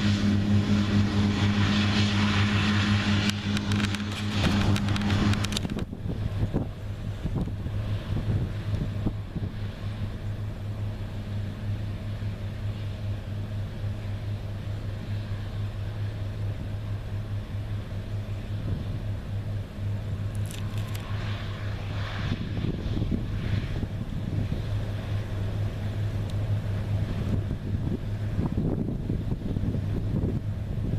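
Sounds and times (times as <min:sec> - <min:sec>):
combine harvester droning: 0:00.0 - 0:30.9
rustling clatter: 0:03.4 - 0:05.9.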